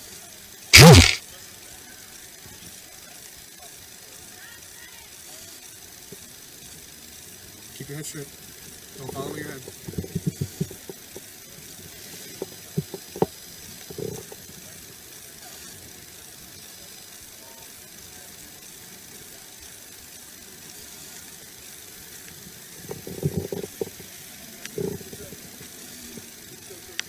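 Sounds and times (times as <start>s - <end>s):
background hiss: 0.0s - 2.0s, 3.9s - 27.0s
sharp clicks: 0.8s - 1.2s.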